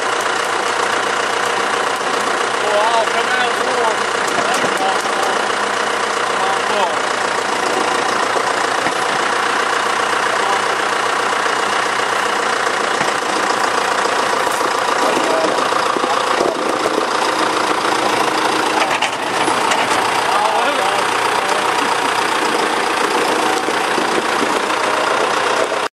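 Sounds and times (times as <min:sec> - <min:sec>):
engine running steadily: 0:00.0 - 0:25.9.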